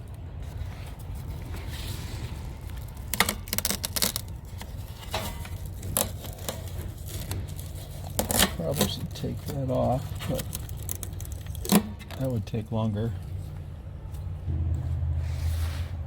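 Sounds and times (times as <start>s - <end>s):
steady low rumble: 0.0s - 16.0s
small metal parts rattling: 2.8s - 12.4s.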